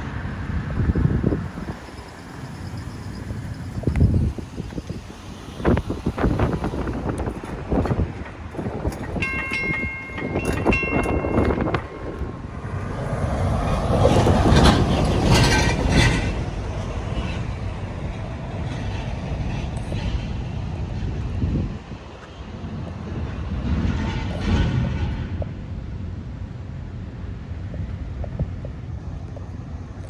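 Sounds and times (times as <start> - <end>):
train wheels clattering on rails: 0.0 - 26.1
crossing bell high tones: 9.1 - 12.7.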